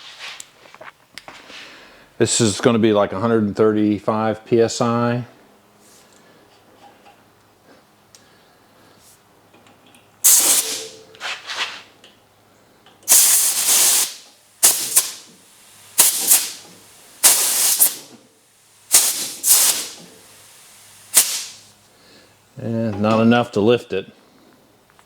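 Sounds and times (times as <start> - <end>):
compressed air hissing bursts: 10.2 - 11.1, 13.1 - 21.8.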